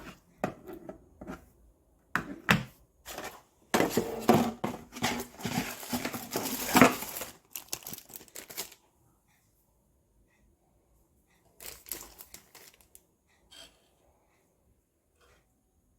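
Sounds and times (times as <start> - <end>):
crinkling and rustling: 2.2 - 8.9, 11.5 - 13.0.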